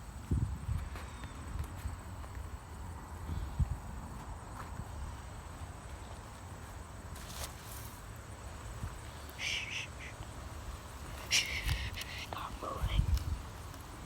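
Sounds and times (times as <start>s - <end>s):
wind rumble on microphone: 0.0s - 5.4s, 10.6s - 14.0s
soft whisper: 9.1s - 10.2s, 11.1s - 13.5s.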